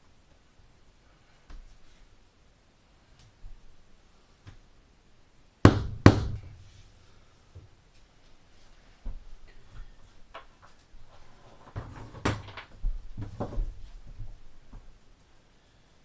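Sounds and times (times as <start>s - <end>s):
floor planks knocking and clunking: 11.6s - 14.9s.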